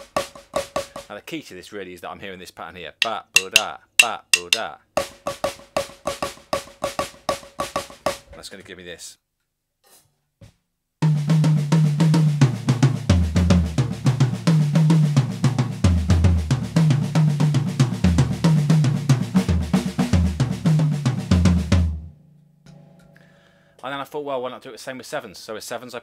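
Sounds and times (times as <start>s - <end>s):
drum kit flam rudiments: 0.0s - 1.1s, 3.0s - 8.3s, 11.0s - 22.1s.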